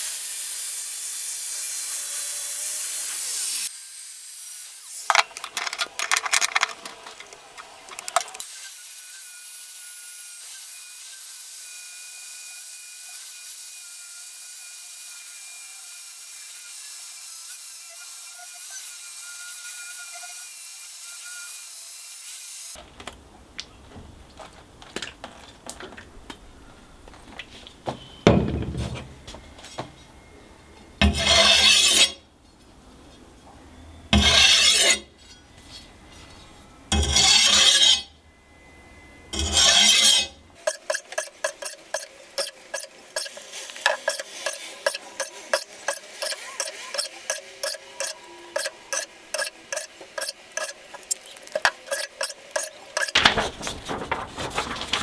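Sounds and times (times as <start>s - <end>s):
workshop tool running: 5.1s - 8.5s, 39.3s - 55.0s
rubbing or filing strokes: 39.4s - 53.2s
light scraping: 39.4s - 55.0s.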